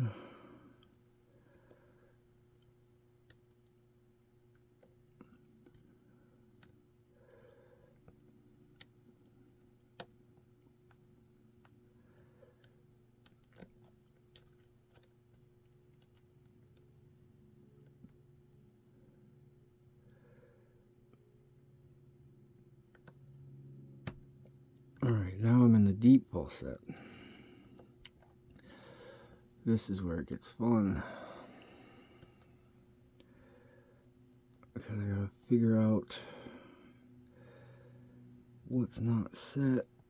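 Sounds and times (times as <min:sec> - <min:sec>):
faint steady hum: 0:00.0 - 0:40.0.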